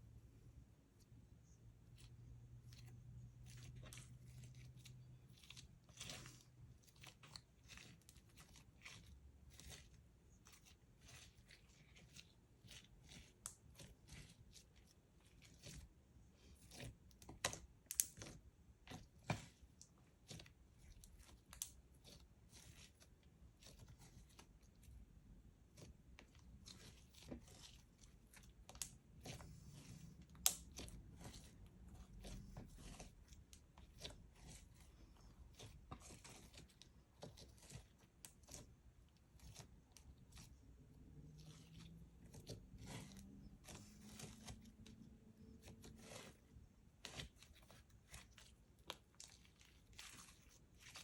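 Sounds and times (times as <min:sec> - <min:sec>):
slime sticky clicks and crackles: 0:17.3 - 0:18.3, 0:30.3 - 0:31.0.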